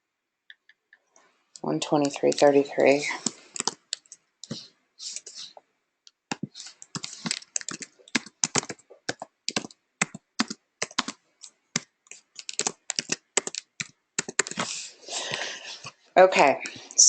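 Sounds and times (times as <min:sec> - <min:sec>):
typing on computer keyboard: 0:01.9 - 0:04.6, 0:06.3 - 0:14.6.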